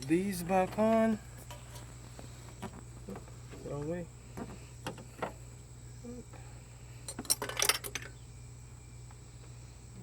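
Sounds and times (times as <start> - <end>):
small hard parts clicking and clinking: 7.1 - 8.2.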